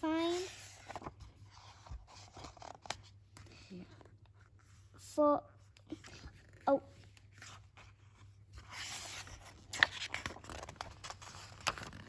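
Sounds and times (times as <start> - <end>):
paper page rustling: 0.3 - 4.7, 7.2 - 12.0.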